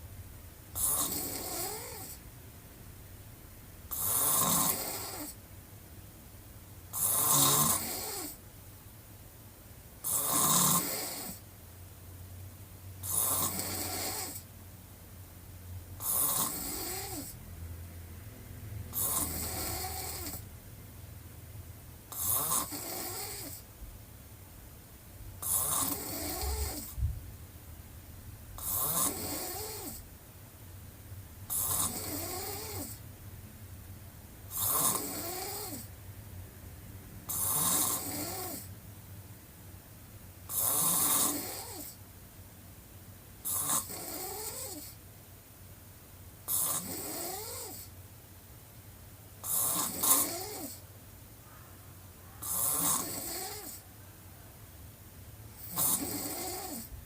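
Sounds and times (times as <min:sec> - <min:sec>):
woman snoring: 0:00.8 - 0:02.2, 0:03.9 - 0:05.4, 0:06.9 - 0:08.4, 0:10.0 - 0:11.4, 0:13.0 - 0:14.5, 0:16.0 - 0:17.4, 0:18.9 - 0:20.5, 0:22.1 - 0:23.6, 0:25.4 - 0:27.0, 0:28.6 - 0:30.0, 0:31.5 - 0:33.0, 0:34.5 - 0:35.9, 0:37.3 - 0:38.7, 0:40.5 - 0:42.0, 0:43.4 - 0:45.0, 0:46.5 - 0:47.9, 0:49.4 - 0:50.8, 0:52.4 - 0:53.8, 0:55.6 - 0:56.9.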